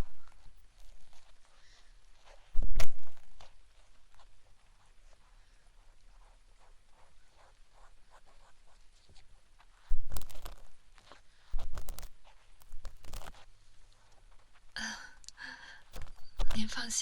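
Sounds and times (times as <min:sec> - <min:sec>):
rustling: 0:00.0 - 0:14.8, 0:15.4 - 0:17.0.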